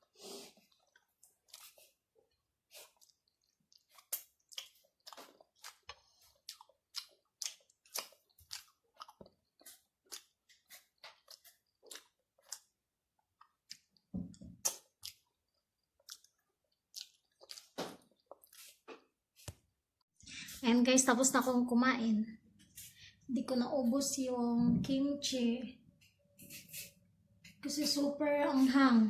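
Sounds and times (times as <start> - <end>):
chewing food: 0.0 - 19.2.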